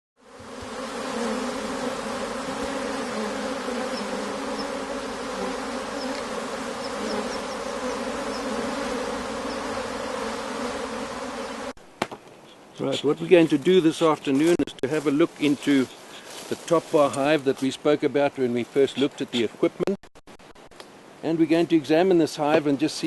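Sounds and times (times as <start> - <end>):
bees buzzing: 0.2 - 11.8.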